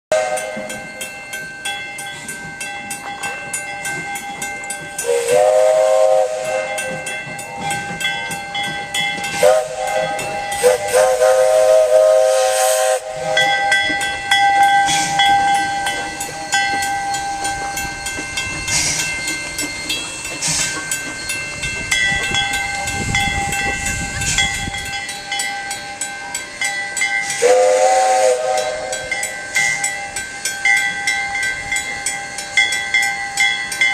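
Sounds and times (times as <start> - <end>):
steam locomotive whistle: 0.1 - 1.0, 5.0 - 7.2, 9.3 - 15.9, 27.2 - 30.1
steam hissing: 0.1 - 33.9.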